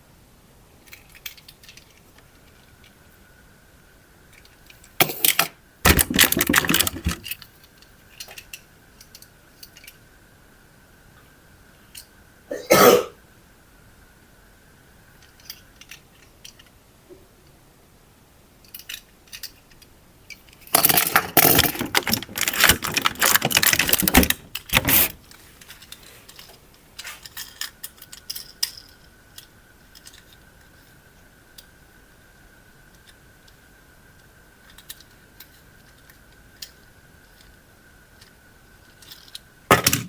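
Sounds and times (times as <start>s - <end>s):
crackling rustling: 0.7s - 3.6s, 4.2s - 10.3s, 18.6s - 39.8s
handling clicks and rattles: 0.8s - 3.0s, 4.3s - 10.0s, 18.6s - 30.7s, 38.2s - 40.0s.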